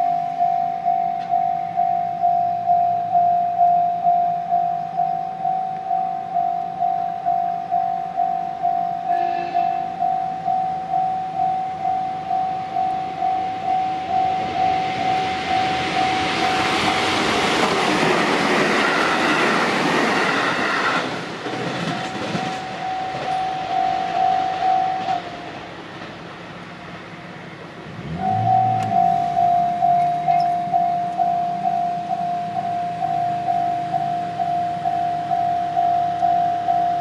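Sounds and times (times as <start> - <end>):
level crossing warning bell: 0.0 - 20.8, 21.6 - 25.9, 28.1 - 37.0
train horn: 9.0 - 10.0
train wheels rushing on rails: 9.0 - 37.0.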